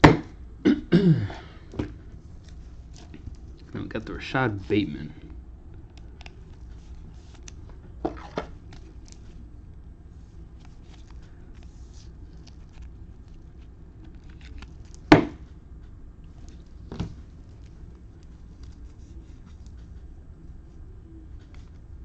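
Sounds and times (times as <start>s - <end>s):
cards rustling and clicking: 1.8s - 3.7s, 5.7s - 20.1s.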